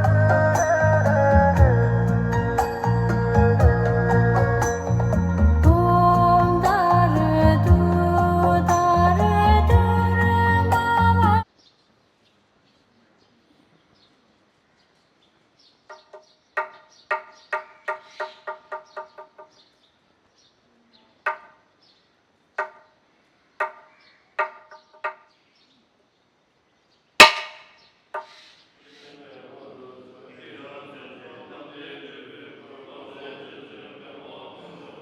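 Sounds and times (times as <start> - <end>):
short pitched strikes: 27.2 - 27.8.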